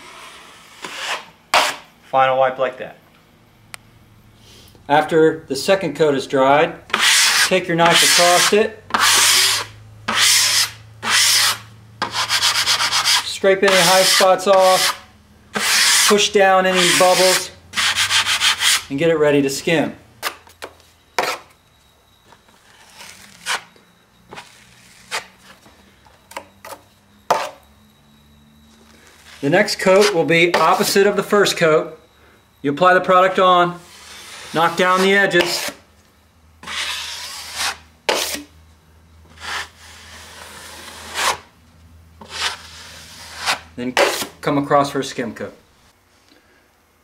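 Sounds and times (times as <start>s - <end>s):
drywall knife scraping compound: 0.0s - 1.9s, 6.9s - 18.9s, 21.2s - 21.6s, 22.6s - 25.4s, 29.2s - 31.2s, 33.0s - 35.8s, 36.6s - 38.5s, 39.3s - 41.5s, 42.2s - 44.4s.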